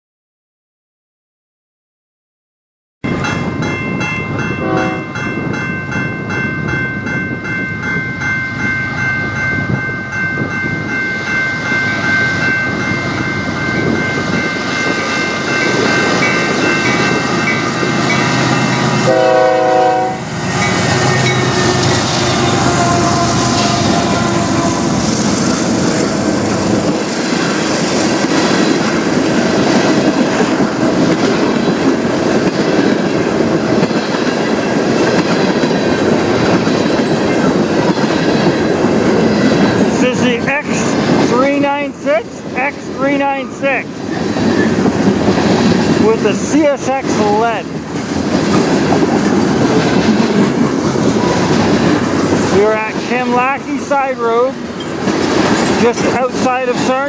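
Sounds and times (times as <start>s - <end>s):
crossing bells ringing: 3.0s - 27.6s, 39.0s - 47.8s, 50.4s - 57.0s
freight train rolling past: 3.0s - 57.0s
train horn blasts: 4.6s - 5.1s, 18.9s - 25.5s
wheels clicking over rail joints: 54.6s - 57.0s.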